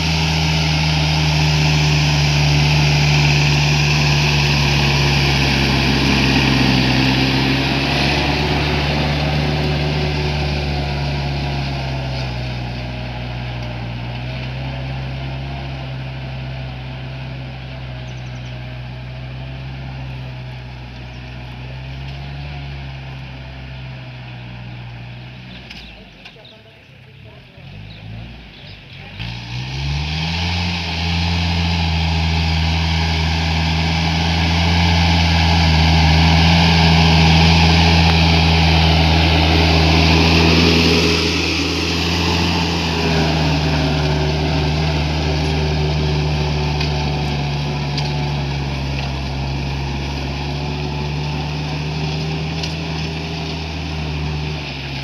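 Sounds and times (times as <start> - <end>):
tractor diesel engine running: 0.0 - 55.0.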